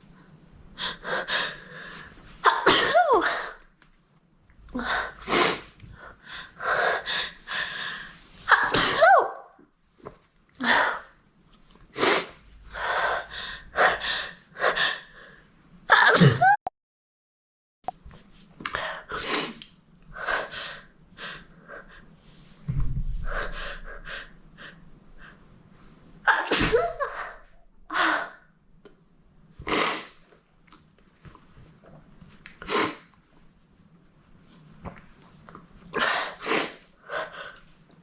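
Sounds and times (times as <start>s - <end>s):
woman sneezing: 8.5s - 9.4s, 15.9s - 16.6s, 26.3s - 27.3s.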